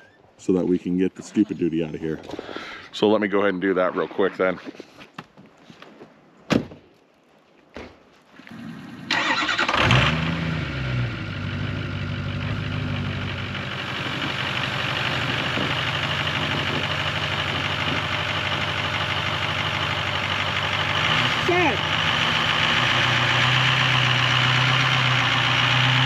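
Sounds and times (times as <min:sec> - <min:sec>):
engine idling: 0:08.5 - 0:26.0
engine starter cranking: 0:09.1 - 0:10.6.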